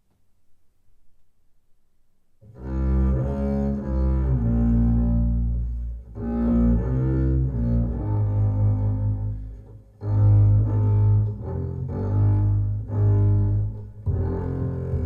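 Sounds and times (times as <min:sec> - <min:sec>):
bowed low strings: 0:02.4 - 0:15.0.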